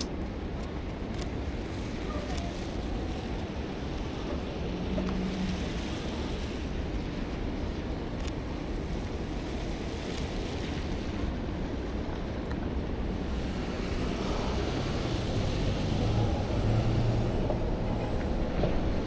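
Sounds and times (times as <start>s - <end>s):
city traffic rumble: 0.0s - 19.0s
vehicle engine hum: 11.8s - 19.0s.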